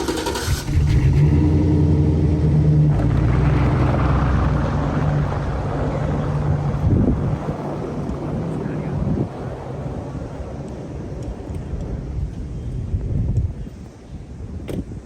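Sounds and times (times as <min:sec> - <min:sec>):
van engine running: 0:00.0 - 0:07.8.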